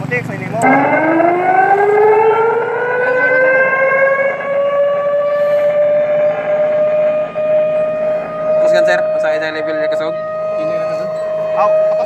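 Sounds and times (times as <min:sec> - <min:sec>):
water level alarm siren wailing: 0:00.5 - 0:12.0.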